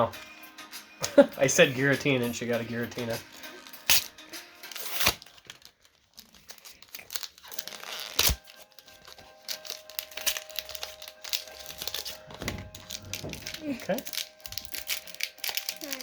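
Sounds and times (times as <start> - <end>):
soft background music: 0.0 - 5.8, 6.4 - 16.0
foil pack tearing and crinkling: 2.9 - 16.0
sharp rip: 3.6 - 4.1, 4.7 - 5.2, 7.8 - 8.4.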